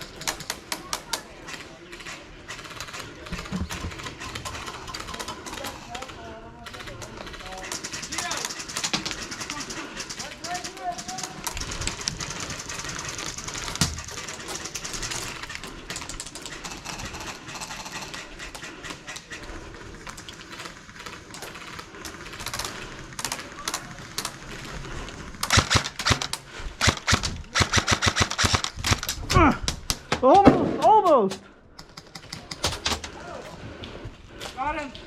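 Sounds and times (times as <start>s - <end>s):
rapid fire bursts: 0.0s - 29.2s
airsoft guns firing: 6.7s - 19.4s, 25.3s - 29.2s.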